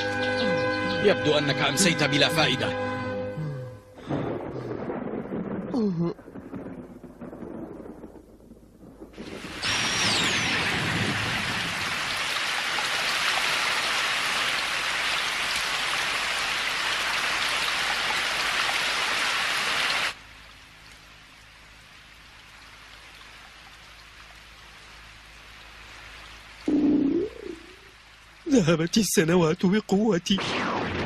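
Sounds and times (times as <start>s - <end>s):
heavy rain hissing: 9.2s - 30.4s.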